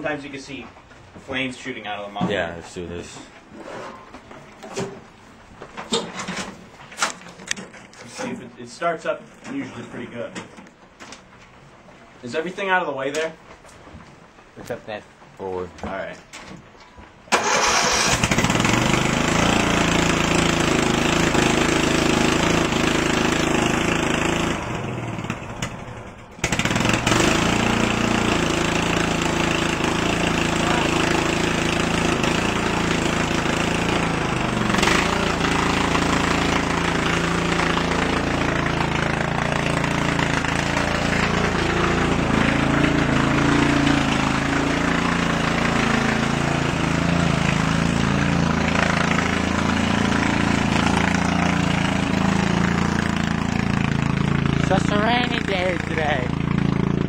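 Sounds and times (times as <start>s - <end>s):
lawn tractor engine running: 17.3s - 57.0s.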